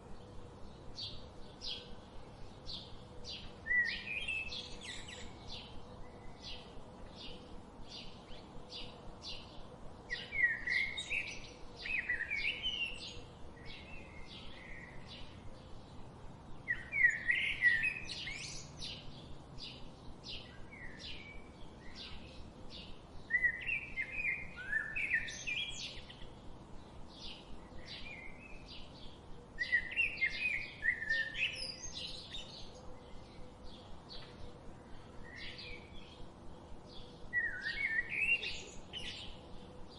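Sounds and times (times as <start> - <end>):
bird warbling song: 0.0 - 26.5, 27.1 - 36.3, 36.9 - 39.9
birds chirping: 10.1 - 39.9.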